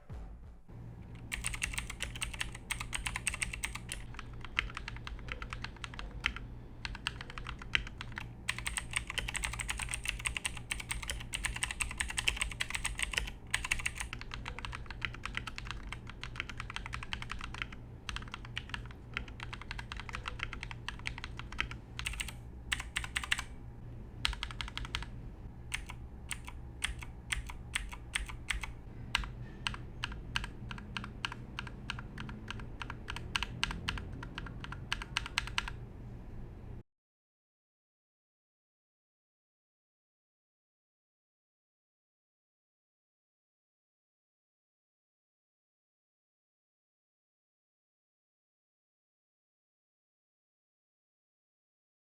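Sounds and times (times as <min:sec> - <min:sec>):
mechanical keyboard clicking: 0:01.2 - 0:23.6, 0:24.2 - 0:35.8.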